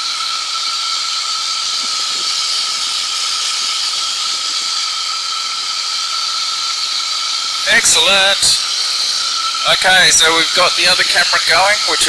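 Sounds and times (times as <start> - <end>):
steady high engine whine: 7.3 - 12.0.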